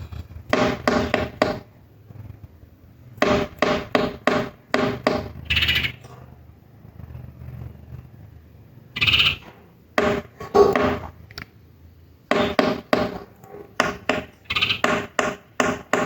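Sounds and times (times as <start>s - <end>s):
birds calling harshly: 3.2s - 6.3s, 8.8s - 11.0s, 13.8s - 16.0s.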